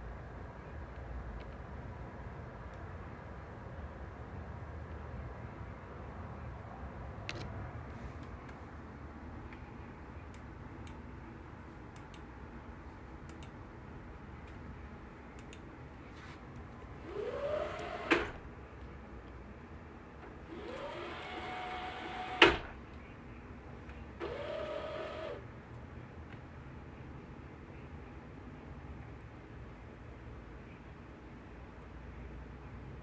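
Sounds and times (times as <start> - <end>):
small electric motor whirring: 20.5 - 22.5, 24.2 - 25.4.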